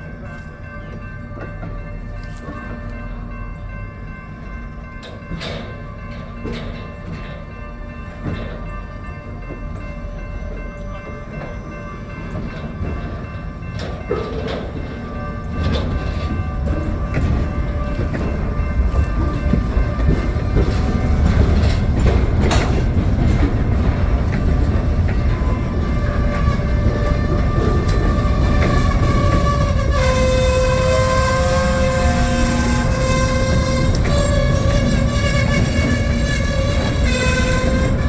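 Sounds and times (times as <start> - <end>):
diesel locomotive rumbling: 0.0 - 38.0
metallic clanks of wheels: 5.0 - 7.6, 12.3 - 38.0.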